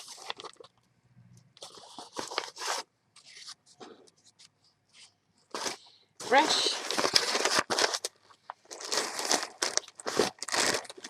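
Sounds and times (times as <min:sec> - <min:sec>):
packaging rustling and crinkling: 0:00.0 - 0:00.8, 0:01.6 - 0:03.6, 0:05.5 - 0:11.0
small taps and scrapes: 0:03.2 - 0:05.8.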